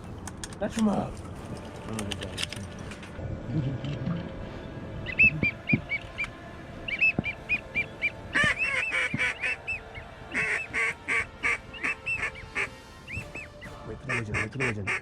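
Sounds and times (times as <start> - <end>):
whistled duck calls: 5.0 - 6.3, 6.9 - 13.6.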